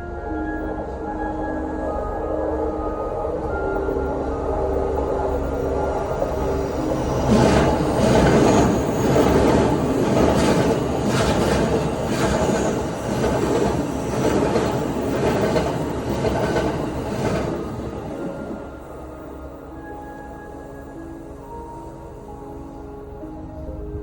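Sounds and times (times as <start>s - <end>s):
train wheels rumbling on rail: 3.5s - 19.6s.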